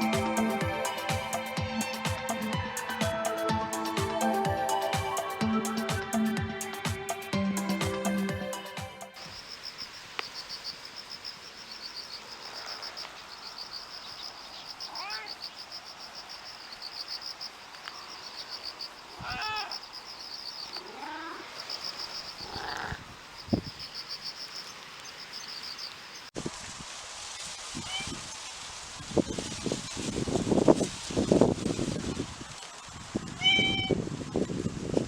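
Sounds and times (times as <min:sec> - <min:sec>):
insects chirping: 0:08.5 - 0:26.3
cat meowing: 0:14.9 - 0:15.4, 0:19.2 - 0:19.7, 0:20.8 - 0:21.5, 0:33.4 - 0:34.0.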